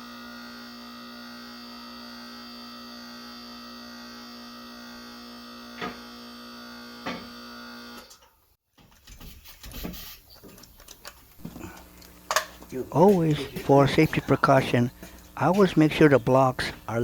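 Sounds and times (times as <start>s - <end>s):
hydraulic pump motor humming: 0.0s - 8.3s, 10.7s - 17.0s.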